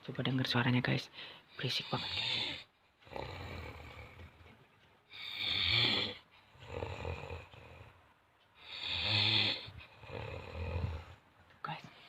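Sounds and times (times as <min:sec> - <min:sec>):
person snoring heavily: 0:01.9 - 0:04.4, 0:05.2 - 0:08.0, 0:08.6 - 0:11.2.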